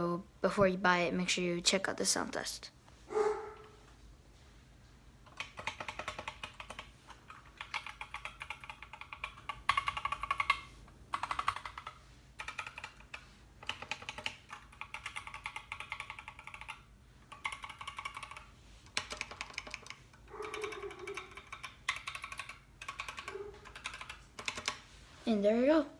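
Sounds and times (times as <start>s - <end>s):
mechanical keyboard typing: 5.3s - 24.8s.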